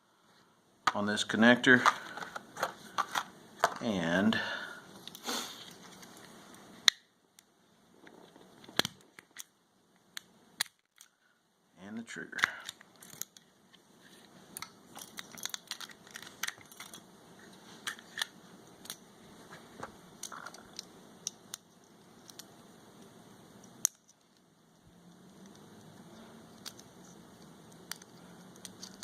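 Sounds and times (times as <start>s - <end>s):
pistol parts clicking: 8.6s - 9.6s, 10.2s - 11.2s, 12.4s - 13.5s, 14.6s - 17.1s, 17.8s - 19.0s, 26.5s - 29.0s.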